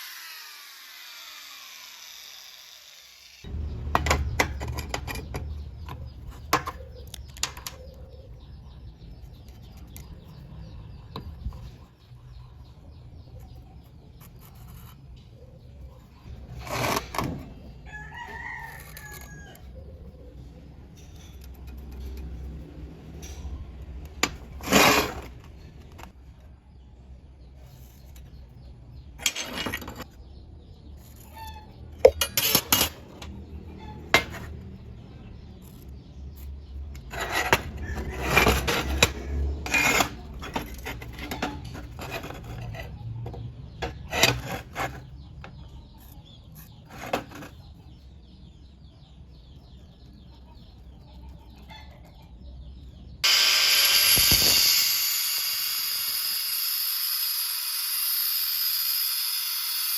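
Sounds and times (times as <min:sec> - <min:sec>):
metal tools clinking and scraping: 0:29.2 - 0:30.1, 0:32.0 - 0:33.4
loud steady hiss: 0:53.2 - 0:59.9.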